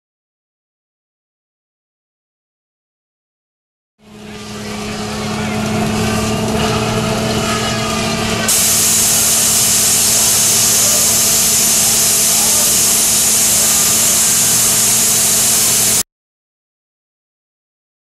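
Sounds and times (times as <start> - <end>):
low engine hum: 4.0 - 16.0
steam hissing: 8.5 - 16.0.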